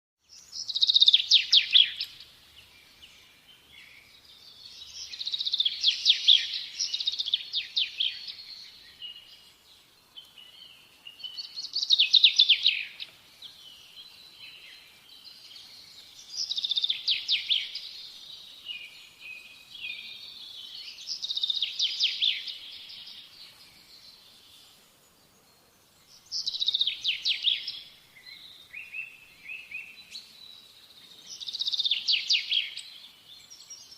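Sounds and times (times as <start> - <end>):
soft bird twittering: 0.3 - 33.9
bird repeating bright song phrase: 3.8 - 9.3.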